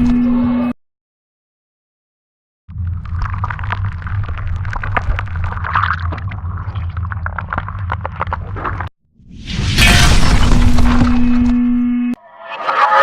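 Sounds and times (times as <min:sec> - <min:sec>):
crackles and pops: 0:02.7 - 0:08.9.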